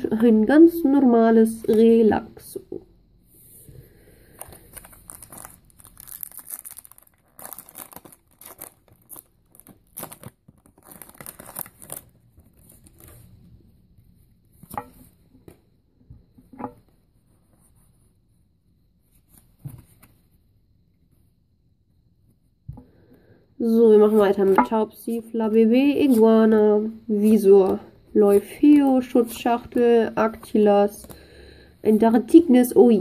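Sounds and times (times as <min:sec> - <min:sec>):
foil wrapper tearing and crinkling: 0:04.4 - 0:13.2.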